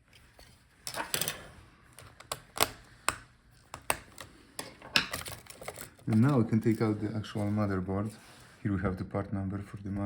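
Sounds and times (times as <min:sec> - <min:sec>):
laptop parts clicking and tapping: 0:00.2 - 0:06.4.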